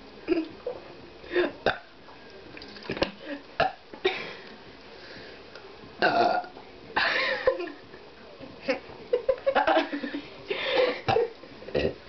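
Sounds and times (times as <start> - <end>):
loud burps: 1.6 - 1.9, 3.6 - 3.8, 6.0 - 6.5, 11.1 - 12.0.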